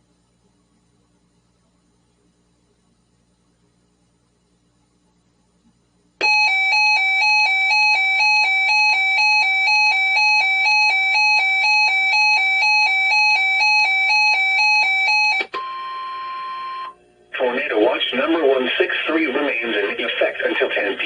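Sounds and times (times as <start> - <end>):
buzzy two-tone alarm warble: 6.2 - 17.0.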